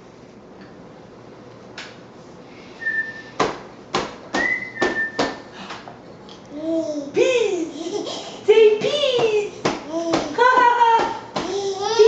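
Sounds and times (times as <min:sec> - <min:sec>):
thin high whistle: 0:02.7 - 0:03.4, 0:04.4 - 0:05.5.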